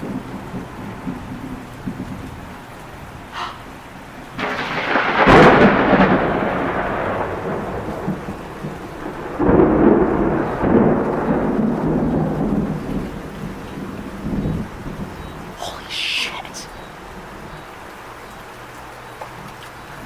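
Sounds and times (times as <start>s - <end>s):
thunder rumbling: 0.0s - 18.8s
steady rain: 0.0s - 20.0s.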